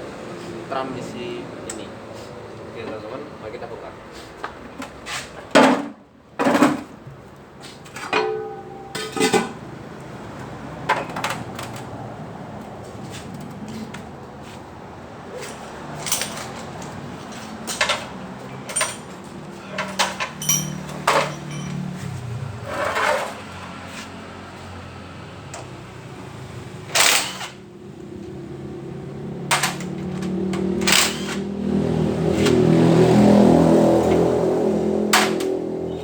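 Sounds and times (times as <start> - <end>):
metal tools clanking: 7.9 - 9.6, 15.5 - 23.6.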